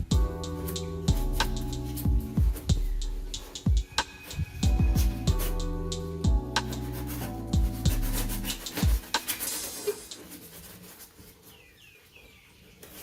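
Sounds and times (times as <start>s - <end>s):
hip-hop music with sliding bass: 0.0s - 10.4s
faint rubbing scraping: 4.3s - 11.9s.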